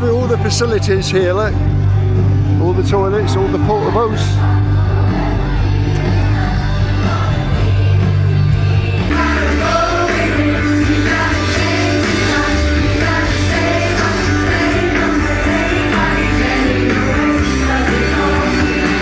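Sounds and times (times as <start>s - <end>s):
loud music with bass line: 0.0s - 19.0s
person singing: 9.1s - 19.0s.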